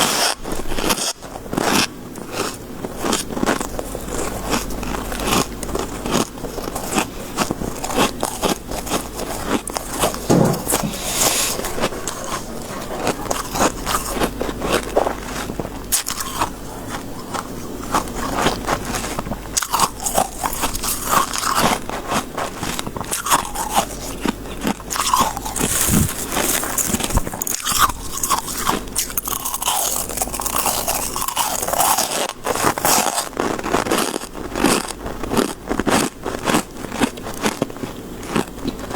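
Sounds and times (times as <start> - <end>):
chewing crunchy ice: 0.0 - 38.9.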